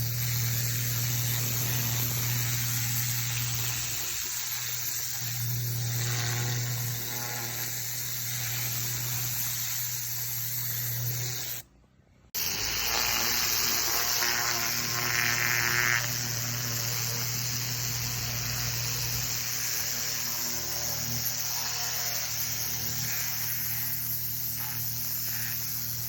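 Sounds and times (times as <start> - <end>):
high-pressure water jet hiss: 0.0 - 11.6, 12.4 - 26.0
pressure washer machine hum: 0.0 - 11.6, 12.4 - 26.0.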